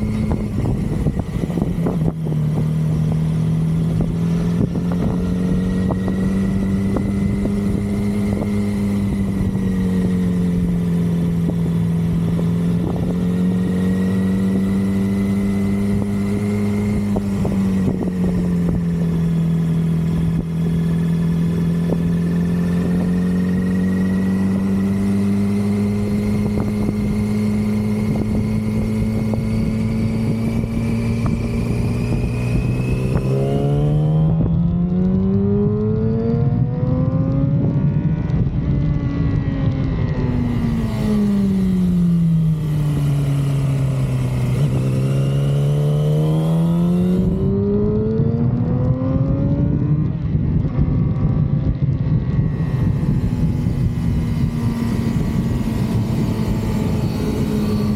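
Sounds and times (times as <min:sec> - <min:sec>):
motorcycle engine running: 0:00.0 - 0:57.9.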